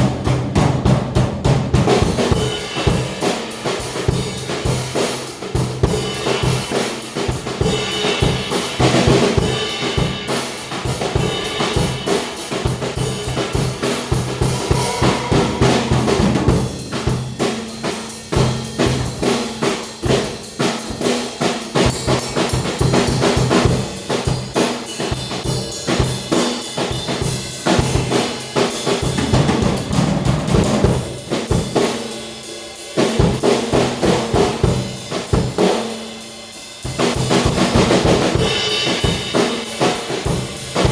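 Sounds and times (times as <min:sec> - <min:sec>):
snare drum: 0:00.0 - 0:32.2, 0:33.0 - 0:36.1, 0:36.8 - 0:40.9
cymbal strokes: 0:09.6 - 0:22.2
bass drum: 0:10.9 - 0:24.4, 0:29.0 - 0:31.7.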